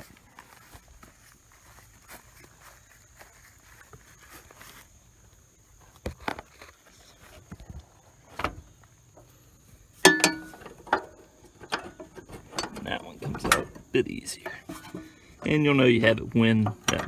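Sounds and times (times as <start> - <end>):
loud ringing metal clank: 10.0 - 11.0
knocks of tools on metal: 10.0 - 11.1.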